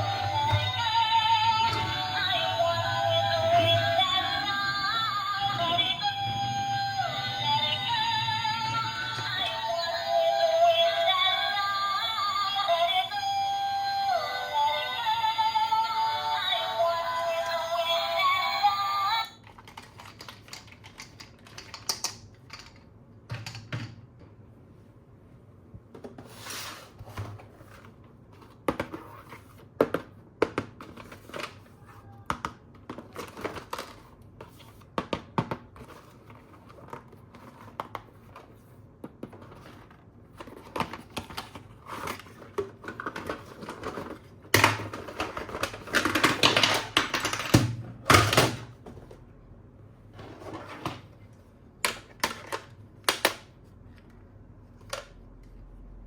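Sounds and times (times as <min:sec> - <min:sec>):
plastic toys clicking and tapping: 0:19.4 - 0:24.0, 0:40.4 - 0:48.6.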